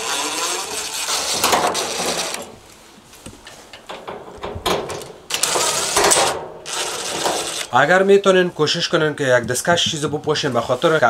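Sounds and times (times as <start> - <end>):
power screwdriver running: 0.0 - 2.5, 5.3 - 7.8.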